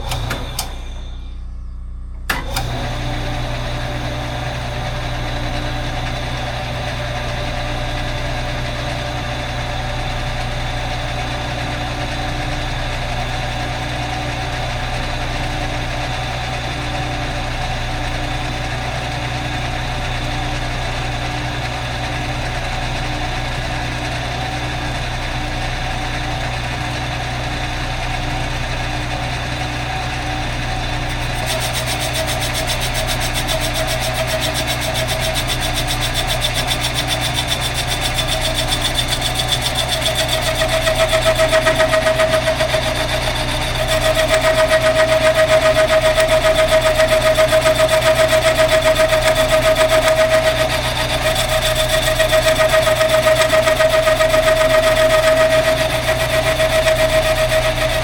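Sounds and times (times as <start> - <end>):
metal lathe humming: 29.9 - 58.0.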